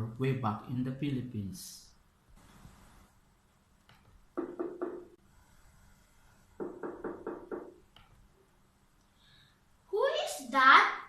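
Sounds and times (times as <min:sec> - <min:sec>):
knocking on a door: 0:04.4 - 0:05.2, 0:06.6 - 0:07.9.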